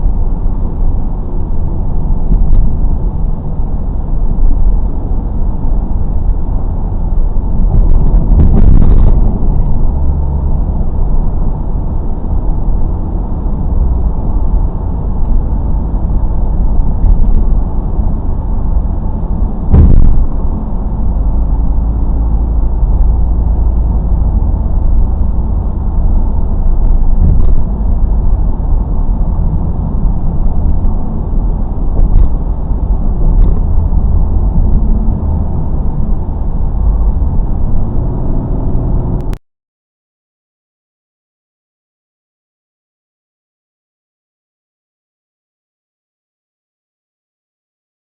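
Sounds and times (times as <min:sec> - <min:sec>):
road and tyre rumble: 0:00.0 - 0:39.4
loud thump: 0:19.7 - 0:20.4.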